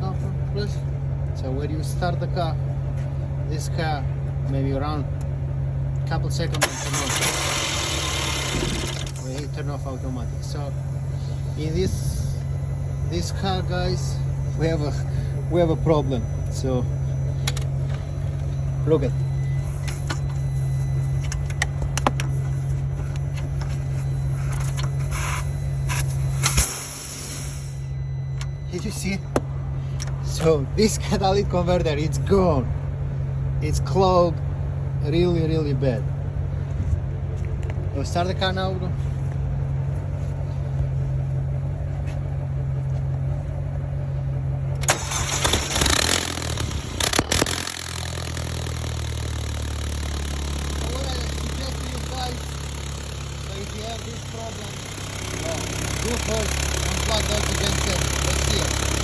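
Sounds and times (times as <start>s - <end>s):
car engine idling: 0.0s - 59.0s
steady low hum: 0.0s - 59.0s.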